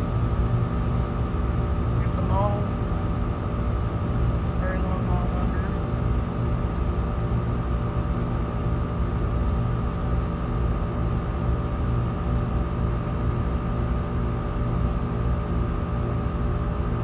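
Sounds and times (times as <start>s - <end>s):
faint steady whine: 0.0s - 6.9s
air conditioner unit drone: 0.0s - 17.0s
low hum: 4.4s - 6.1s.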